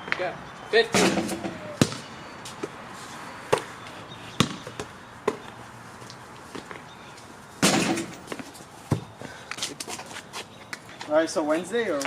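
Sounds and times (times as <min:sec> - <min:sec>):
basketball bouncing on hard court: 0:01.7 - 0:02.1, 0:04.4 - 0:05.4.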